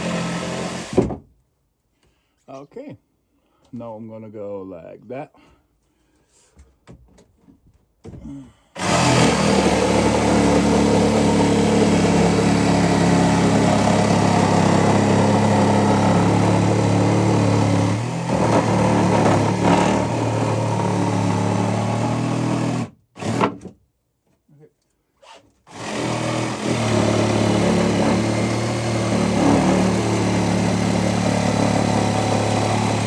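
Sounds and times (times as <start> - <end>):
power tool cutting wood: 0.0 - 1.1, 8.8 - 23.6, 25.7 - 33.0.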